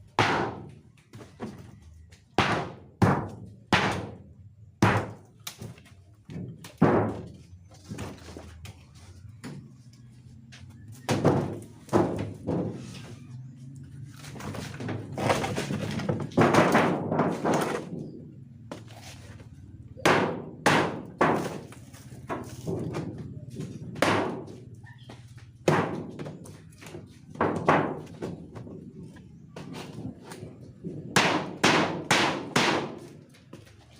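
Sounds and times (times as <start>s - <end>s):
thunks and knocks: 4.8s - 8.2s, 11.0s - 13.0s, 14.4s - 18.8s, 25.6s - 28.9s.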